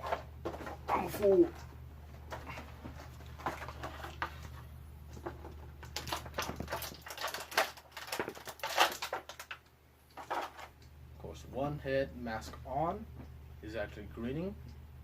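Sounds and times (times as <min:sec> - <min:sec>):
plastic packaging crinkling: 0:00.0 - 0:10.9.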